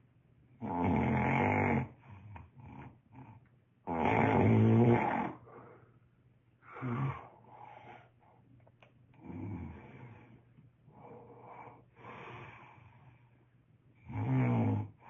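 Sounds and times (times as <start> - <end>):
man snoring: 0.6 - 2.0, 3.9 - 5.4, 6.7 - 7.4, 9.2 - 10.2, 14.0 - 15.0
faint breathing: 5.3 - 8.6, 9.2 - 13.6.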